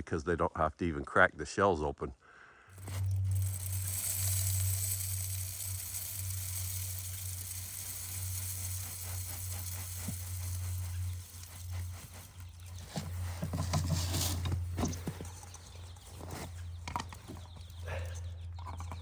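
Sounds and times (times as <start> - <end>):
seeds pouring trickle: 2.7 - 18.2.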